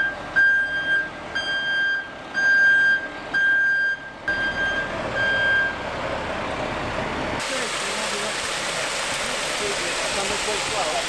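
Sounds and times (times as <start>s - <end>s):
truck backup alarm beeping: 0.0s - 6.1s.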